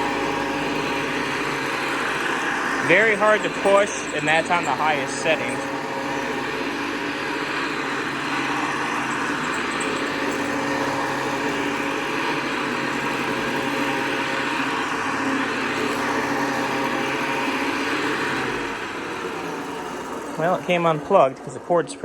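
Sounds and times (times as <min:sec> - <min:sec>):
vacuum cleaner running: 0:00.0 - 0:22.0.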